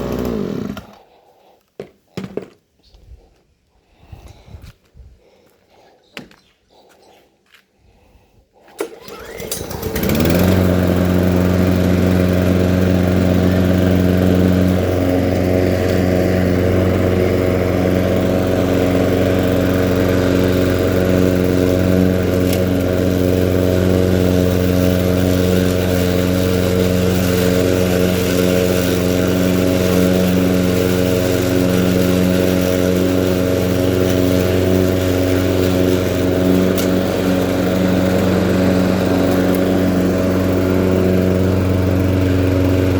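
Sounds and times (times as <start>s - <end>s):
lawn mower engine running: 0.0s - 1.0s, 8.8s - 42.9s.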